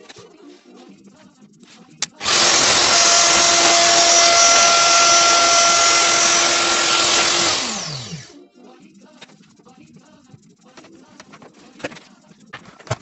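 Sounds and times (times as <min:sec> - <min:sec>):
power tool motor whining: 0:02.2 - 0:08.3.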